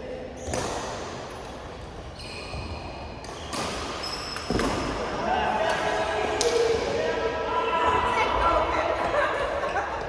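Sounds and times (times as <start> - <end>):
shoe squeaks on court floor: 2.0 - 4.7.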